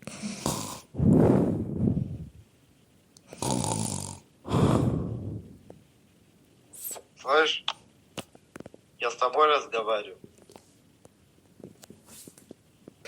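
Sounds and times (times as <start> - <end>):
person fake snoring: 0.0 - 1.4, 3.2 - 5.4
hissing breath: 4.4 - 5.6.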